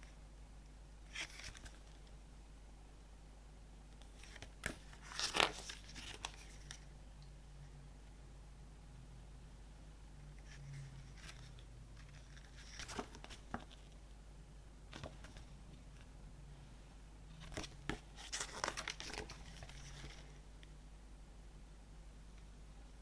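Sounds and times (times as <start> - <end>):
packaging crinkling and rustling: 4.2 - 6.8, 10.7 - 14.0, 17.4 - 20.4.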